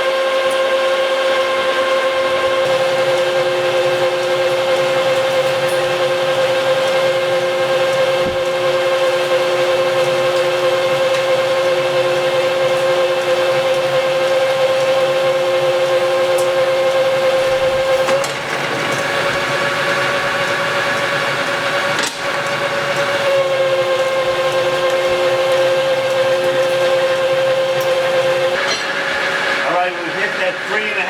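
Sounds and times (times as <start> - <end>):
lathe cutting with high whine: 0.0 - 31.0.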